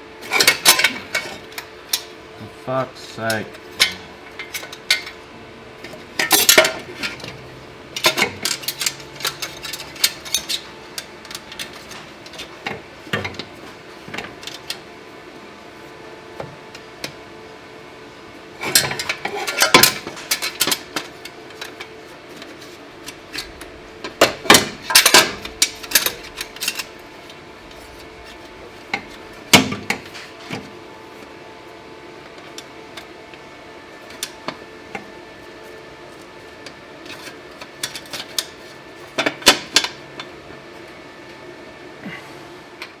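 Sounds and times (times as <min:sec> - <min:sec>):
metal tools clinking and clanking: 0:00.3 - 0:02.1, 0:06.2 - 0:12.5, 0:18.6 - 0:21.8, 0:22.4 - 0:27.0.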